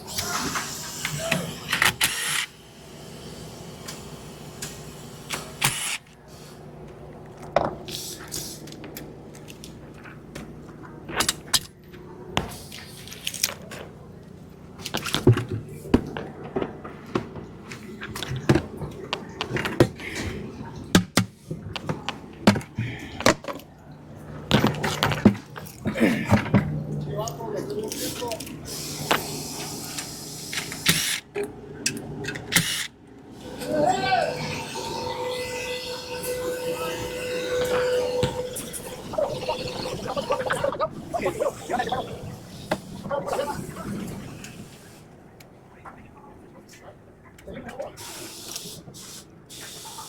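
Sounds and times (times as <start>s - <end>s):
short hissing bursts: 48.0s - 50.0s.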